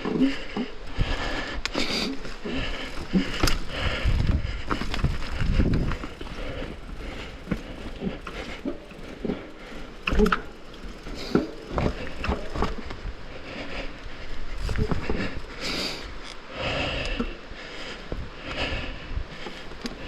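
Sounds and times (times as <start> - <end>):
bike knocks and rattles: 0.0 - 16.3
mountain bike rolling over rough trail: 0.0 - 20.0
low rumble: 2.4 - 16.7.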